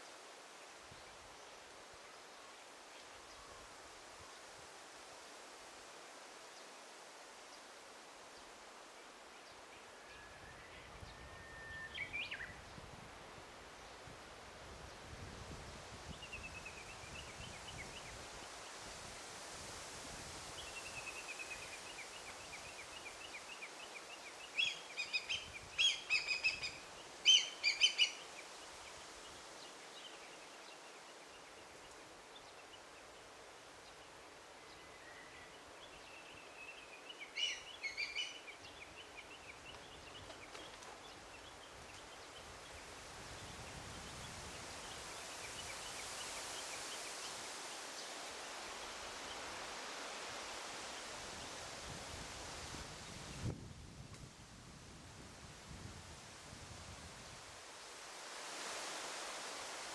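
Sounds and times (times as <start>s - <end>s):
faint steady hiss: 0.0s - 59.9s
small birds singing: 20.6s - 47.4s.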